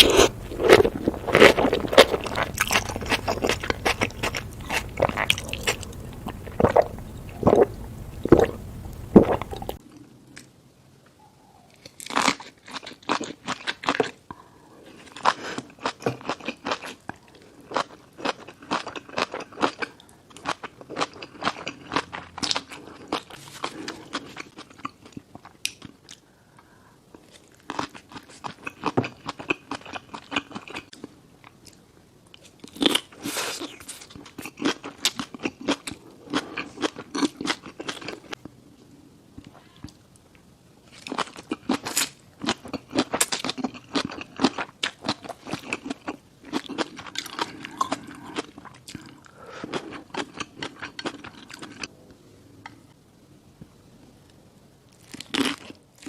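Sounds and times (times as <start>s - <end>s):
person chewing food with wet crunching: 0.0s - 9.8s, 11.7s - 26.3s, 27.1s - 38.6s, 40.8s - 51.9s
person chewing in bursts: 0.0s - 9.8s.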